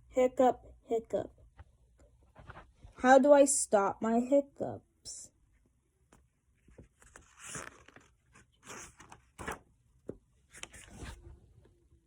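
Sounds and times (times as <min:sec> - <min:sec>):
pages turning: 0:06.1 - 0:11.3.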